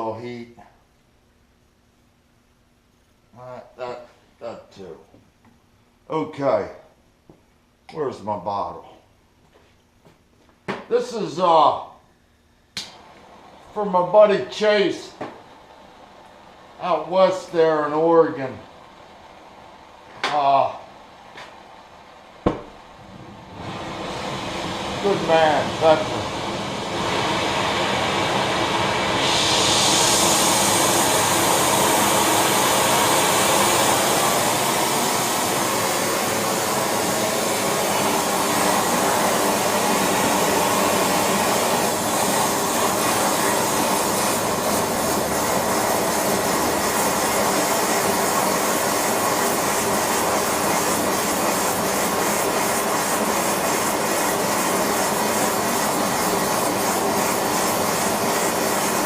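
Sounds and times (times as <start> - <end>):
gas torch flame hissing: 12.7 - 59.0.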